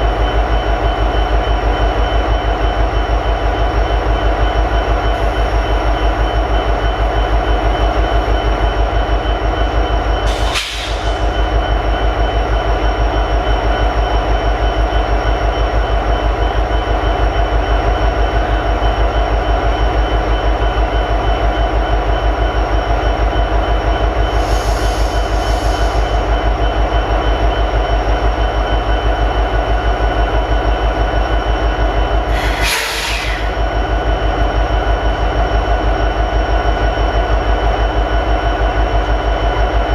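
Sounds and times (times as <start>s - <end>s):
diesel locomotive idling: 0.0s - 39.9s.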